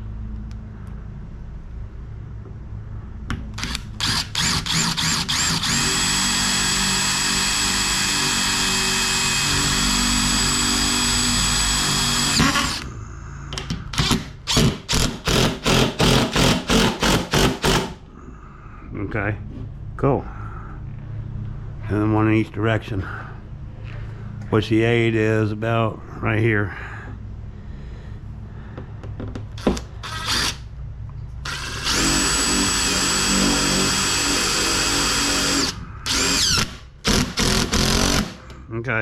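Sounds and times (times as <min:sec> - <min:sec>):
power drill running: 0:03.6 - 0:12.9, 0:13.9 - 0:18.0, 0:29.6 - 0:30.6, 0:31.4 - 0:38.4.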